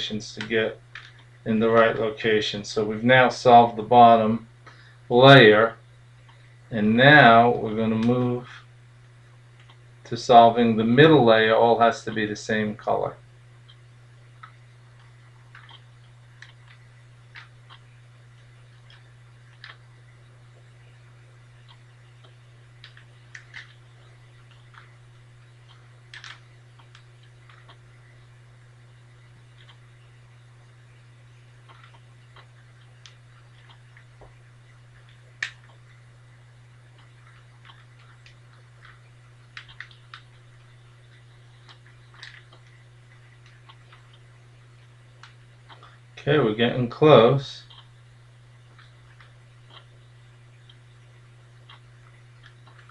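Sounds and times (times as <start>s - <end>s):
steady low hum: 0.0s - 52.9s
plastic cube clicks: 26.1s - 27.0s.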